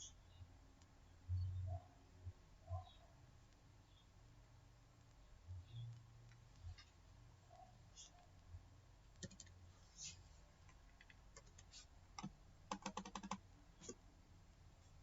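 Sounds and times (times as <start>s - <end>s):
keyboard typing: 9.1s - 9.6s, 10.6s - 14.0s.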